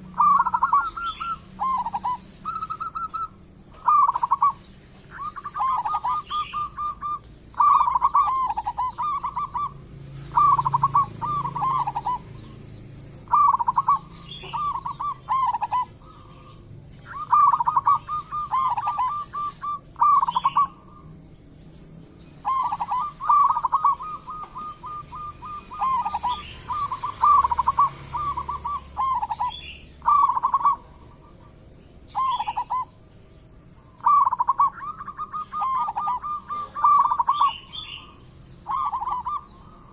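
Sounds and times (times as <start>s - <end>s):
doves cooing: 0.0s - 21.2s, 22.3s - 39.9s
small birds chirping: 0.0s - 39.9s
falling bird whistles: 0.3s - 9.7s, 34.0s - 38.0s.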